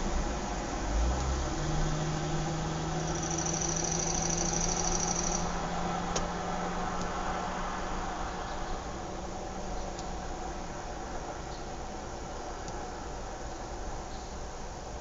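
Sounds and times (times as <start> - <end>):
background noise: 0.0 - 15.0
low engine hum: 0.0 - 15.0
rapidly pulsing chirp: 3.1 - 5.5.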